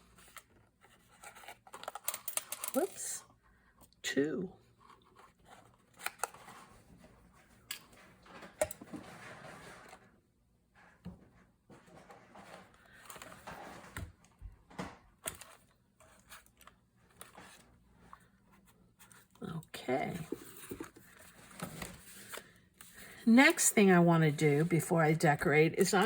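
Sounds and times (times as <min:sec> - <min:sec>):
soft paper rustling: 0:15.3 - 0:25.0.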